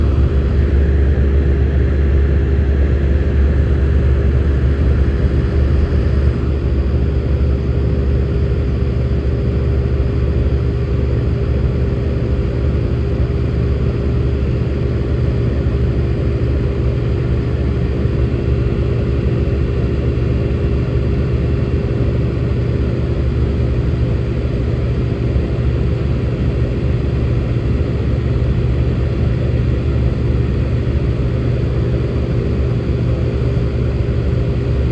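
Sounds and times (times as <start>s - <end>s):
low hum: 0.0s - 9.2s
air conditioning blower fan whirring: 0.0s - 34.9s.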